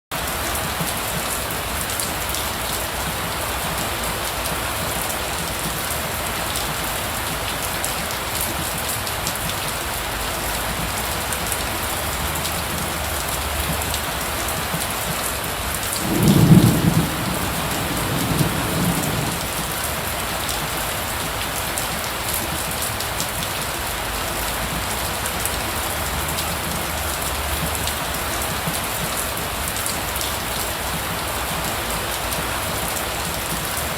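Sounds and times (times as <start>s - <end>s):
heavy rain falling: 0.1s - 33.9s
low rumble of thunder: 16.0s - 20.7s.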